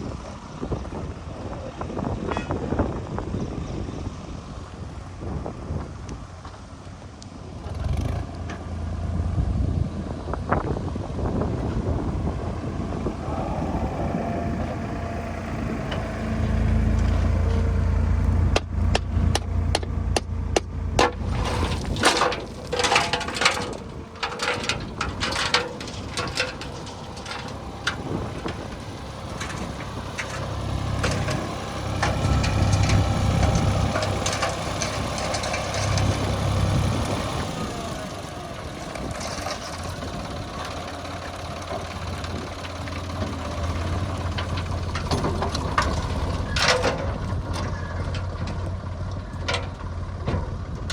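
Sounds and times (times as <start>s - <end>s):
diesel machinery engine running: 0.0s - 50.9s
sharp knocks and clanks: 18.5s - 28.7s.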